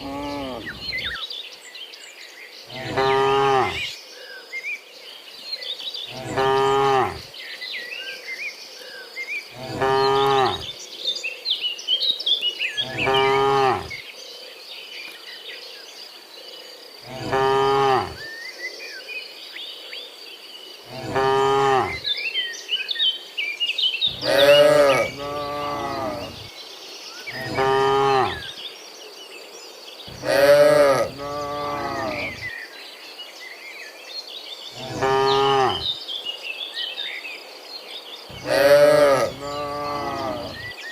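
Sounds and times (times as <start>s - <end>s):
cattle mooing: 0.0s - 1.1s, 2.7s - 3.8s, 6.2s - 7.3s, 9.6s - 10.7s, 12.8s - 14.0s, 17.1s - 18.2s, 20.9s - 22.0s, 24.1s - 26.5s, 27.4s - 28.4s, 30.1s - 32.4s, 34.8s - 35.9s, 38.3s - 40.6s.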